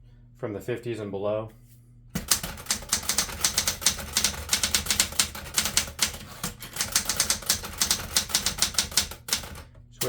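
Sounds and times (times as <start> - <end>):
manual typewriter typing: 2.2 - 10.0.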